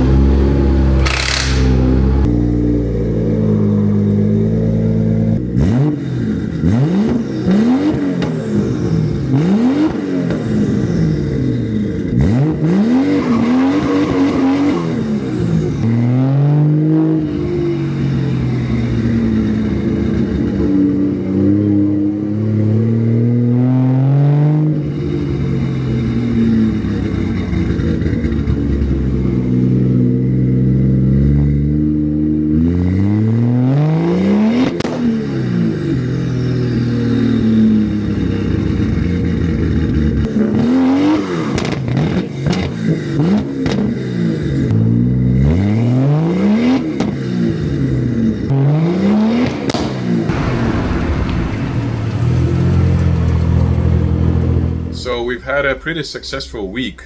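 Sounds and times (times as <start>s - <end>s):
car engine revving: 0.0s - 55.0s.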